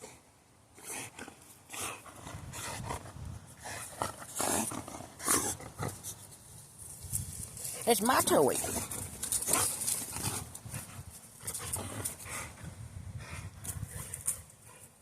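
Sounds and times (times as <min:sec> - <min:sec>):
dog breathing noisily: 0:08.6 - 0:15.0.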